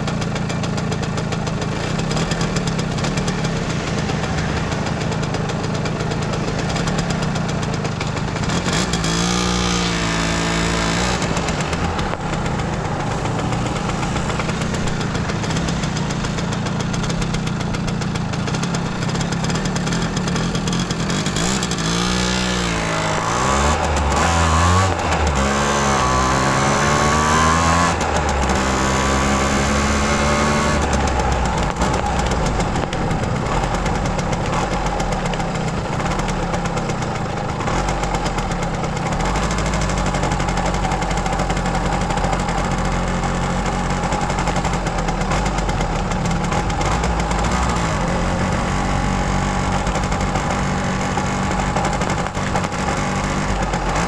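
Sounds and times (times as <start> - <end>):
two-stroke engine revving: 0.0 - 54.0.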